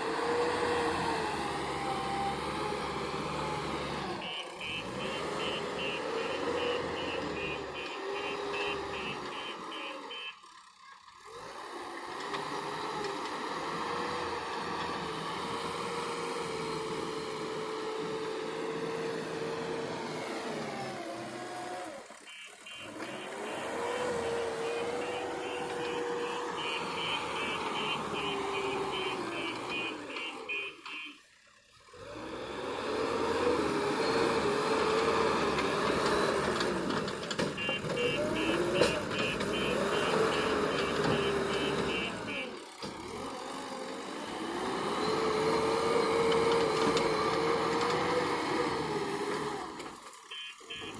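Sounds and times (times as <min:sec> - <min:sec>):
diesel engine running: 0:00.0 - 0:50.9
reversing alarm beeping: 0:22.3 - 0:31.2, 0:37.6 - 0:42.5.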